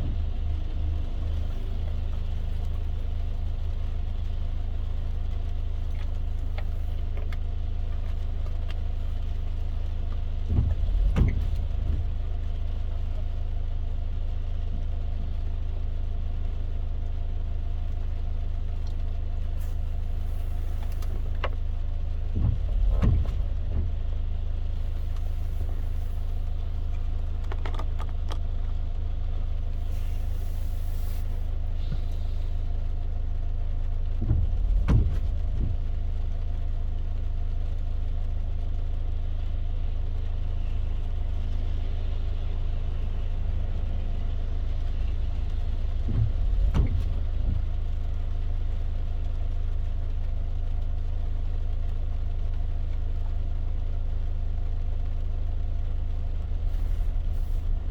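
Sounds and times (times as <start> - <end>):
heavy low thumps: 0.0 - 3.4, 7.7 - 12.8, 19.6 - 27.4, 29.8 - 36.9, 43.4 - 48.9
light rain ticks: 0.0 - 57.9
road and engine drone: 0.0 - 57.9.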